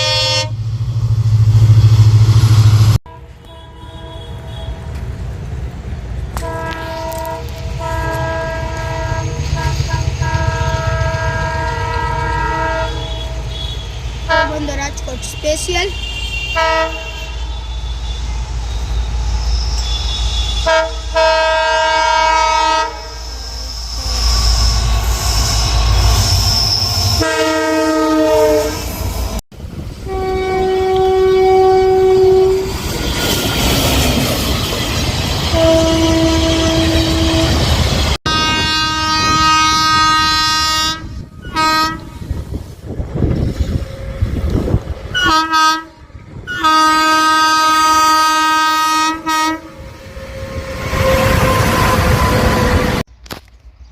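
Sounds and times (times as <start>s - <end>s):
train horn blasts: 0.0s - 0.6s, 3.1s - 5.0s, 6.3s - 18.4s, 19.8s - 23.4s, 27.2s - 28.9s, 30.0s - 33.4s, 35.4s - 42.5s, 43.5s - 53.0s.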